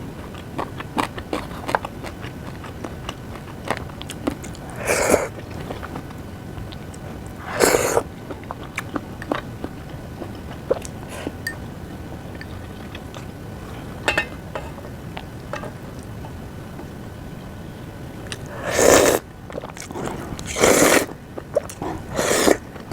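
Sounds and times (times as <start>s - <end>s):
person chewing: 0.2s - 6.1s, 6.7s - 11.5s.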